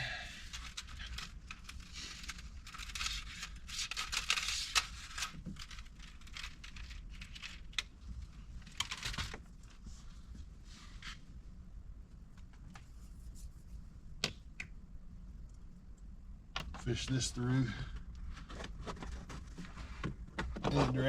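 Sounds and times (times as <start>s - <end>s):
cable rustling behind plastic trim: 0.3s - 11.2s, 17.9s - 21.0s.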